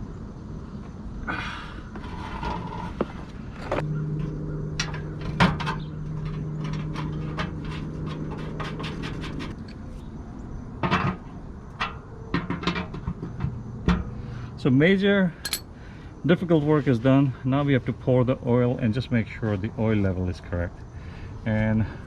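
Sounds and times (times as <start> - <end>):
steady low hum: 0.0 - 22.0
tools clattering: 15.4 - 15.7.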